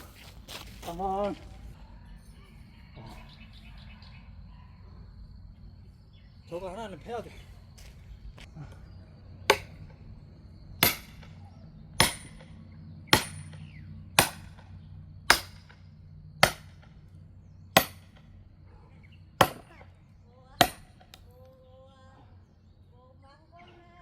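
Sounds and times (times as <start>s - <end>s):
axe chopping into log: 9.5s - 9.8s, 13.1s - 13.6s, 14.2s - 14.6s, 15.3s - 15.8s, 16.4s - 16.9s, 17.8s - 18.2s, 19.4s - 19.8s.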